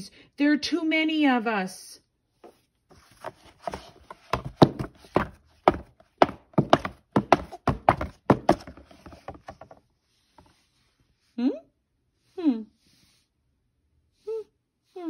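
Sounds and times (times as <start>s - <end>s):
book pages knocking and flapping: 2.9s - 9.8s.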